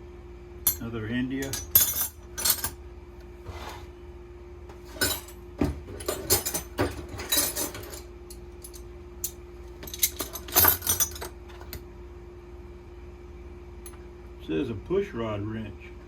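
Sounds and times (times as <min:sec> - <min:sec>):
steel wrenches clinking: 0:00.7 - 0:02.8, 0:04.9 - 0:11.8.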